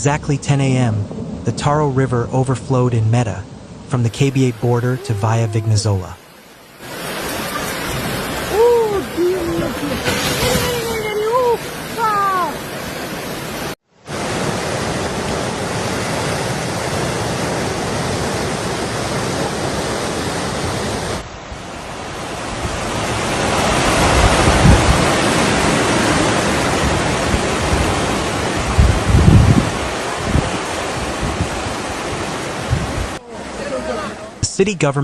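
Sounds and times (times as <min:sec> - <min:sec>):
floodwater rushing: 0:04.0 - 0:34.5
wind rumble on microphone: 0:14.5 - 0:33.2.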